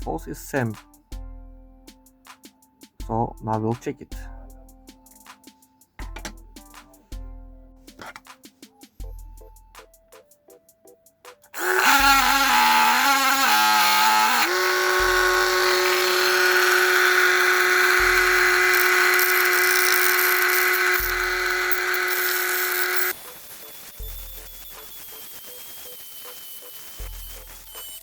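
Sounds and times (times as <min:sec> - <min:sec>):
power tool motor whining: 0:11.6 - 0:28.0.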